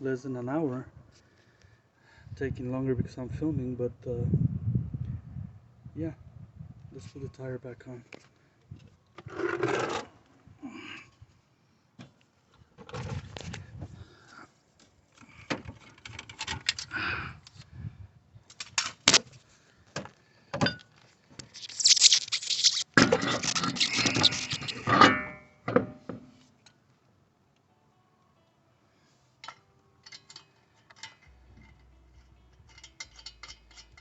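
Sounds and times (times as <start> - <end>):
metal clinks and scrapes: 21.4 - 25.5, 29.4 - 34.0.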